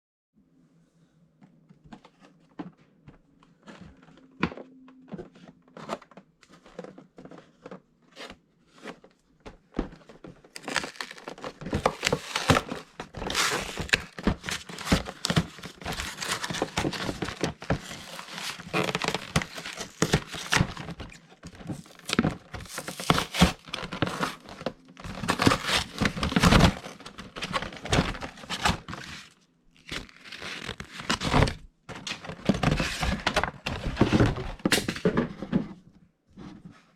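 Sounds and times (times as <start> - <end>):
packaging crinkling and tearing: 10.4 - 34.9.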